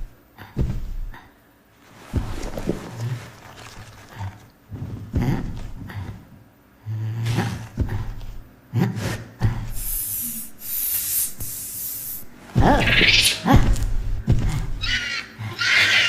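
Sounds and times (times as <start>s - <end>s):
low thuds with rumbling hum: 0.0s - 1.3s, 2.0s - 6.5s, 7.3s - 8.6s, 9.4s - 9.9s, 12.3s - 15.0s
loud steady hiss: 9.7s - 14.2s.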